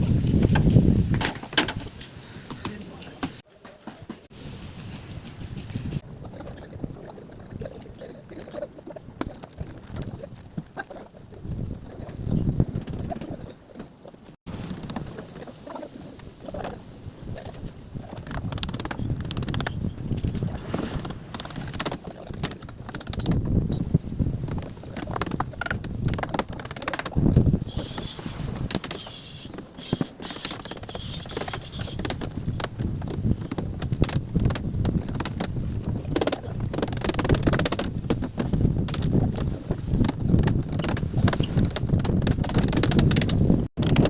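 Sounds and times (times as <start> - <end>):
tools and materials clattering: 0.0 - 4.4, 18.0 - 23.5, 24.4 - 44.0.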